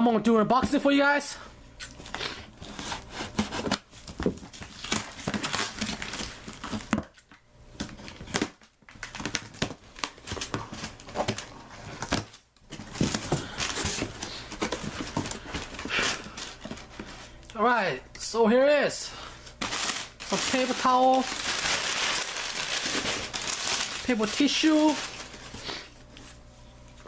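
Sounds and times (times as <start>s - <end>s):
packing tape tearing: 2.1s - 7.2s, 7.8s - 17.1s, 19.6s - 25.8s
cardboard and paper crinkling: 2.6s - 17.4s, 19.6s - 26.4s.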